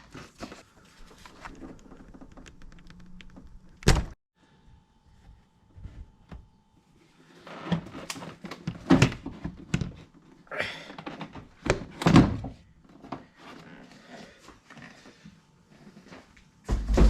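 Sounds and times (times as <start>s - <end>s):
hollow thunks and knocks: 16.7s - 17.0s.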